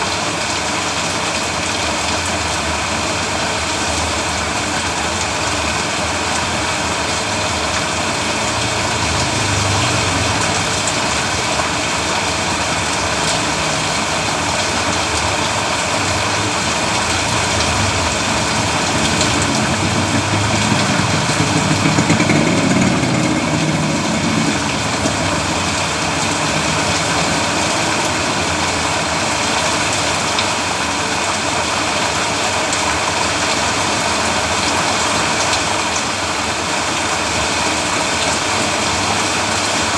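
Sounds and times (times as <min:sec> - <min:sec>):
rain falling on road: 0:00.0 - 0:39.9
vehicle engine rumble: 0:04.2 - 0:32.3.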